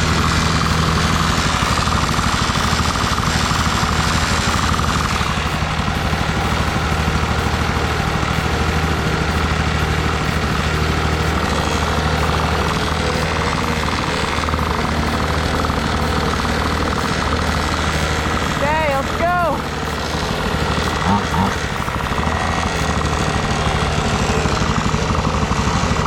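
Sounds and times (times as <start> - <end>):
small two-stroke engine running: 0.0 - 26.0.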